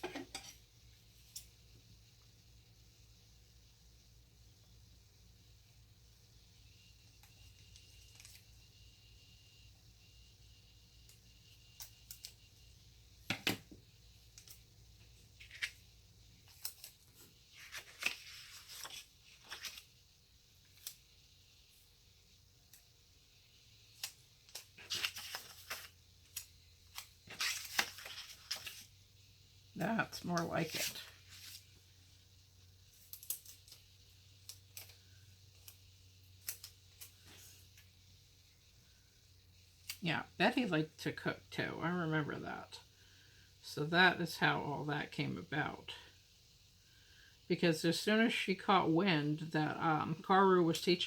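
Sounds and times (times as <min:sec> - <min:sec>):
paper and stickers handled: 0:07.2 - 0:08.5, 0:14.3 - 0:15.8, 0:16.4 - 0:20.0, 0:23.9 - 0:29.0, 0:29.8 - 0:31.8, 0:32.9 - 0:37.9.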